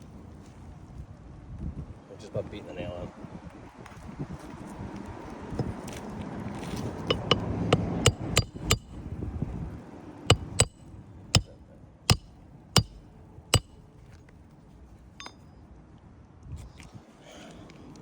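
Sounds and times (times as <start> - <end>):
hammer striking a nail: 7.1 - 9.0, 10.3 - 10.8, 12.1 - 13.0.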